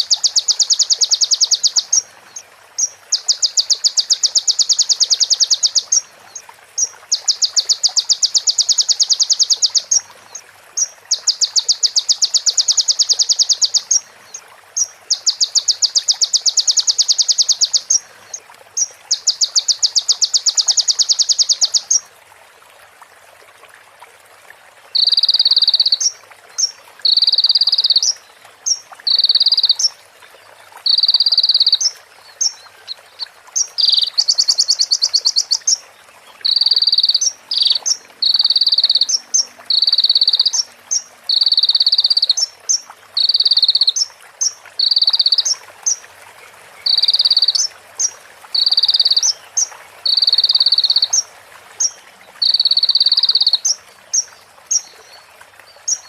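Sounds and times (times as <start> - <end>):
bird chirps: 0.0 - 2.0, 2.8 - 6.0, 6.8 - 10.0, 14.8 - 18.0, 30.9 - 32.6, 33.6 - 35.8, 36.4 - 44.1, 46.8 - 49.5.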